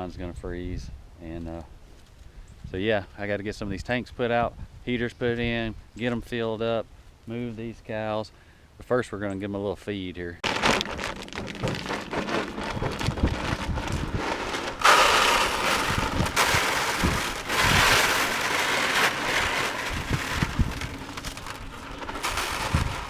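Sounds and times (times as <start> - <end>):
cattle feed pouring: 10.4 - 23.0.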